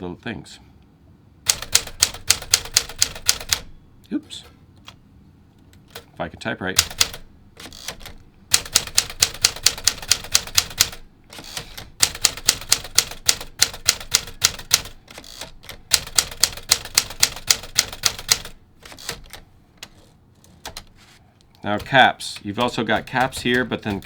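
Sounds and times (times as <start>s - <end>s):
manual typewriter typing: 1.5s - 3.8s, 5.8s - 24.0s.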